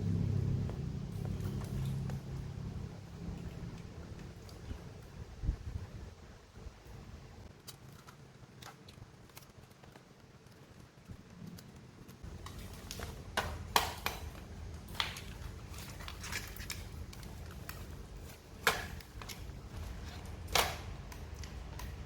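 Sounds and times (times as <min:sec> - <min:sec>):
low steady rumble: 0:00.0 - 0:07.6
clicks and taps of laptop parts: 0:12.4 - 0:15.3.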